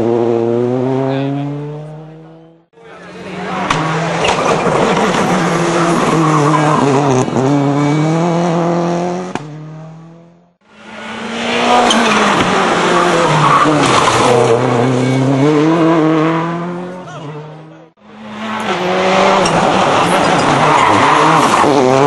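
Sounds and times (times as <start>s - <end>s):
rally car engines revving: 0.0s - 22.0s.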